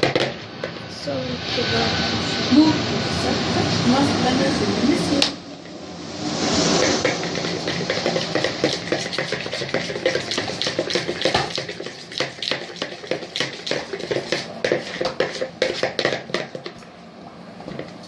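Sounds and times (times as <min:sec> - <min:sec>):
spoon stirring thick mixture: 0:06.8 - 0:16.9.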